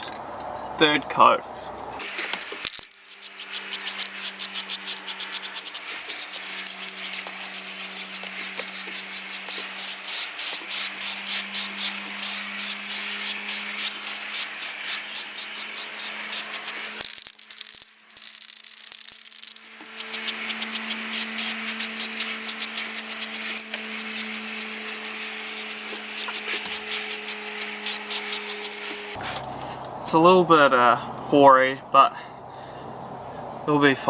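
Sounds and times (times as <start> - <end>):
spray paint can hissing: 2.0 - 29.2.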